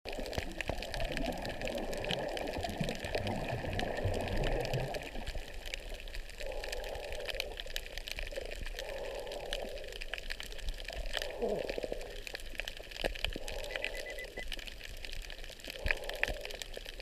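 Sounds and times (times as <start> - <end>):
water sloshing and bubbling: 0.1 - 17.0
small clicks: 12.6 - 14.8.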